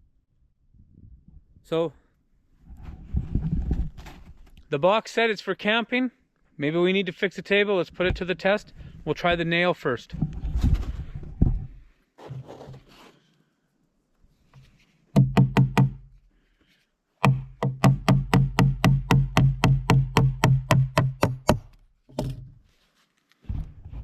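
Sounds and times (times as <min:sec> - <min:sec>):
hammer striking nail into wood: 0:15.2 - 0:16.1, 0:17.2 - 0:22.4.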